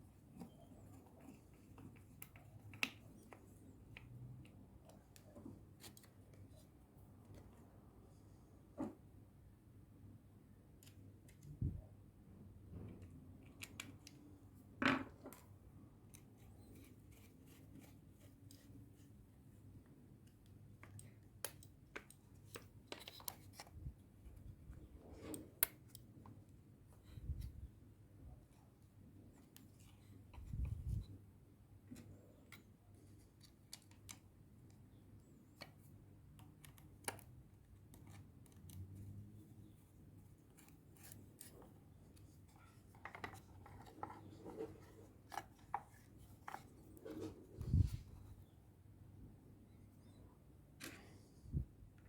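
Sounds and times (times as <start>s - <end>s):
small clicks of lock parts: 12.9s - 14.2s, 20.2s - 26.4s, 33.4s - 34.8s.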